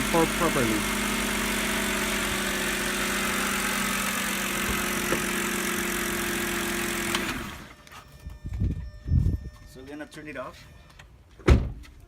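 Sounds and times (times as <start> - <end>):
car engine idling: 0.0 - 7.8.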